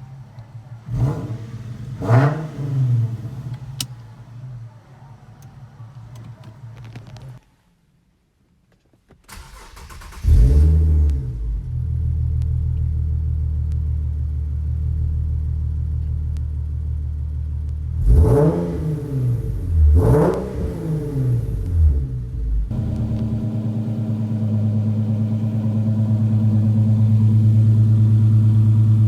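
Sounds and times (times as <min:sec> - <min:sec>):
car engine starting and idling: 0:00.1 - 0:04.4, 0:09.2 - 0:29.0
engine revving: 0:00.9 - 0:03.9, 0:09.5 - 0:11.8, 0:18.0 - 0:29.0.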